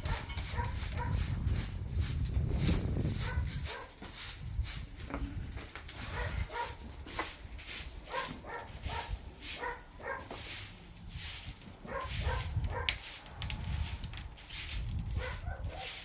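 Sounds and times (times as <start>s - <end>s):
firewood crackling and popping: 12.6s - 15.3s.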